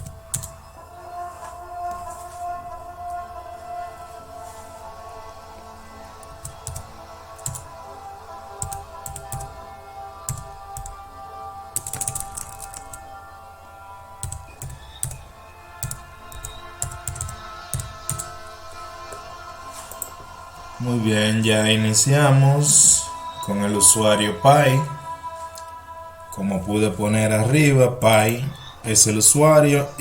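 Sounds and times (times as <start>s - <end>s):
typing on computer keyboard: 0.0s - 0.6s, 6.2s - 7.8s, 8.6s - 9.6s, 10.2s - 11.0s, 11.7s - 13.0s, 14.2s - 18.4s
background music: 0.0s - 30.0s.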